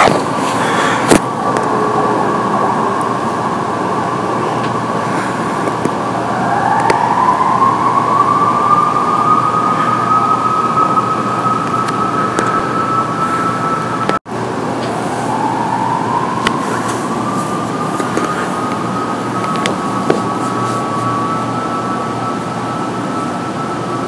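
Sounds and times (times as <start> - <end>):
siren wailing: 0.0 - 24.0.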